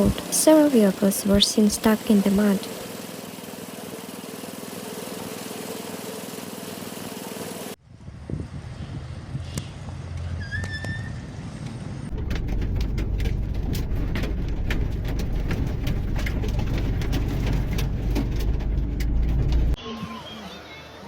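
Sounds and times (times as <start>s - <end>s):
vehicle engine rumbling: 0.0s - 19.8s
clicks and rattles: 12.1s - 19.8s.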